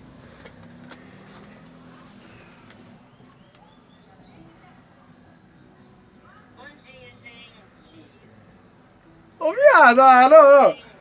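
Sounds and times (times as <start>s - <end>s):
faint bird chirps: 2.2s - 6.2s.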